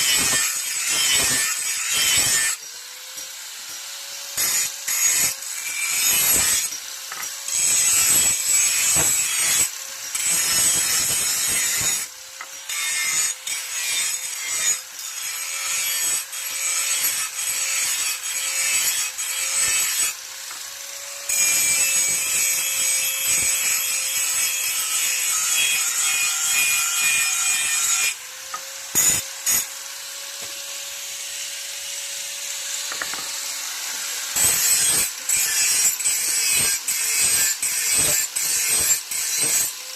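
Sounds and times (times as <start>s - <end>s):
file rasping on iron blade: 0.0s - 2.6s, 34.2s - 39.7s.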